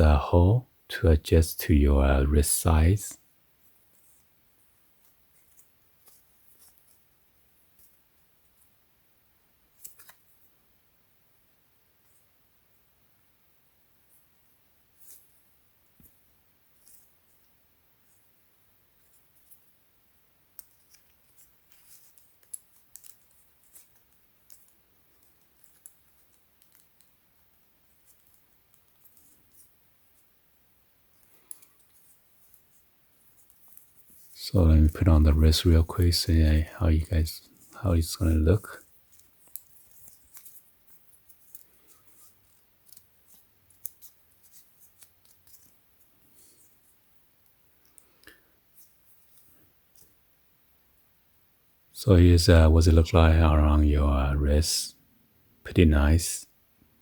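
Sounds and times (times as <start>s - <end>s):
light rubbing of leather band: 31.1s - 50.2s.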